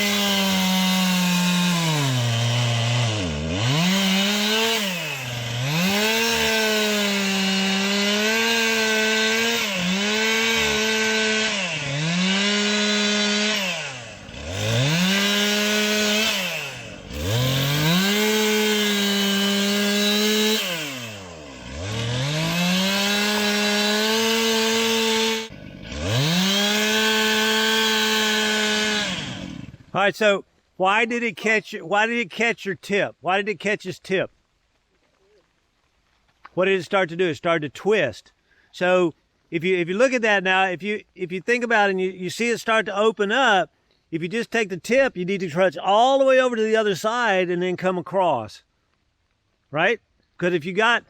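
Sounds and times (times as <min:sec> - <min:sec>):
chainsaw cutting log: 0:00.0 - 0:30.0.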